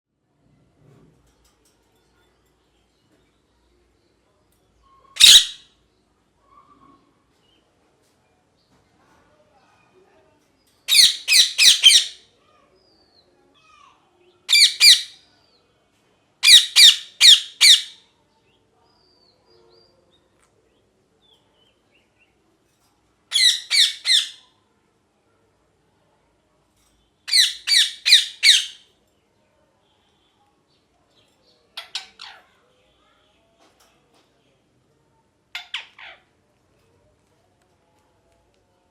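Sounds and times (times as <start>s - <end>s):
parrot squawking: 5.2s - 5.6s, 10.9s - 12.2s, 14.5s - 15.2s, 16.4s - 18.0s, 23.3s - 24.4s, 27.3s - 28.8s, 35.5s - 36.3s.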